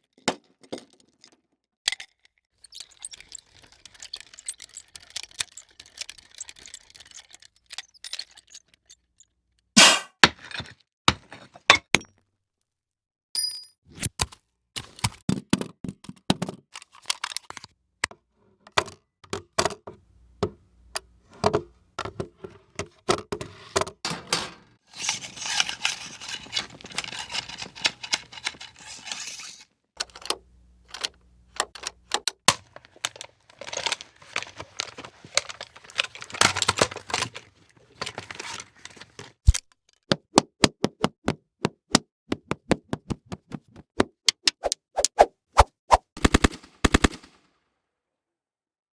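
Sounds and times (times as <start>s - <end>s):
weapon and metal clicks and clanks: 9.8s - 10.1s, 46.2s - 47.4s.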